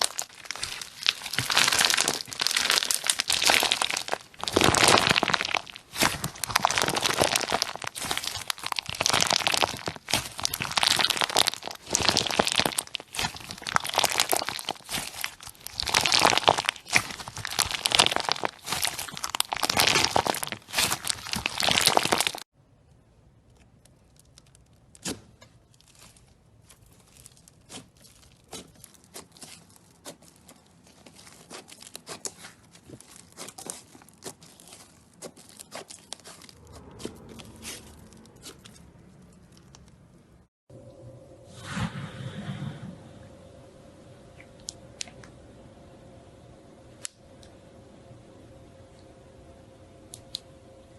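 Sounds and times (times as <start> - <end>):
crunchy slime crackling: 0.0 - 40.5.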